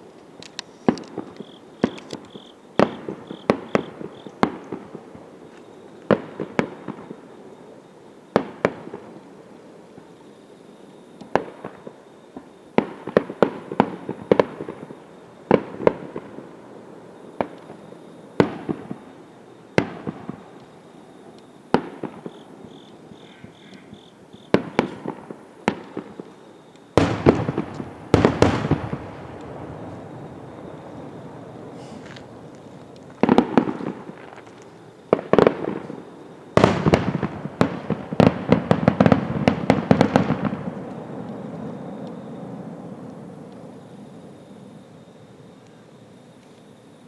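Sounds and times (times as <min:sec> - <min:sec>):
crackling firework bangs: 0:00.0 - 0:07.4, 0:08.3 - 0:10.1, 0:11.2 - 0:20.8, 0:21.7 - 0:23.2, 0:24.0 - 0:45.0
firework shells bursting: 0:00.2 - 0:05.0, 0:23.7 - 0:43.7.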